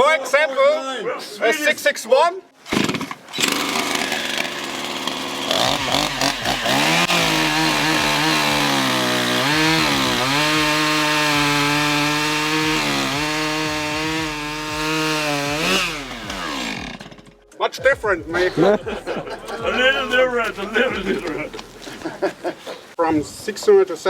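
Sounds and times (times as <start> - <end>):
chainsaw revving: 2.6 - 17.4.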